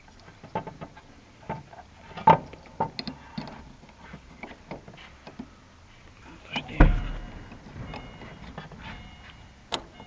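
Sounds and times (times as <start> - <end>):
small parts clicking and knocking: 0.0 - 5.5.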